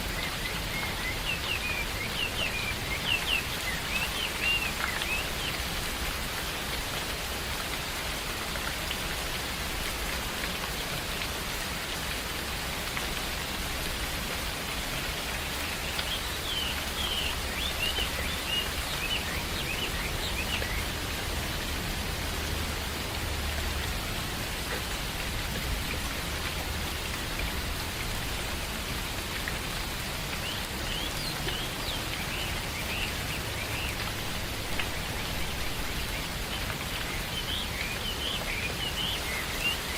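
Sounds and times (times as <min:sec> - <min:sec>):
small birds chirping: 0:00.0 - 0:05.9, 0:15.4 - 0:21.1, 0:30.4 - 0:39.9
rain on foliage: 0:00.0 - 0:39.9.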